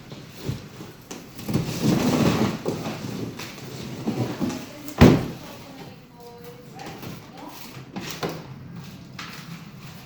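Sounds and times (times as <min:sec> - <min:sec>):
rustling handling noises: 0:00.0 - 0:10.0.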